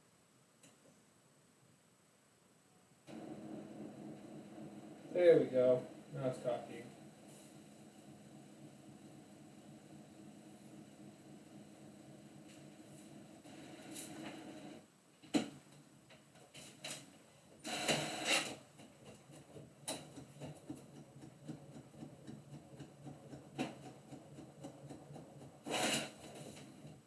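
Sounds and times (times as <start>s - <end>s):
printer paper rush: 3.1s - 8.9s, 17.6s - 18.6s, 25.6s - 27.0s
printer mechanical whir: 3.1s - 14.8s, 17.6s - 27.0s.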